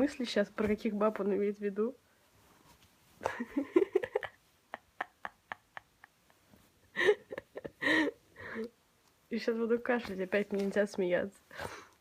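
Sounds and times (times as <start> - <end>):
woman laughing: 3.2 - 8.7.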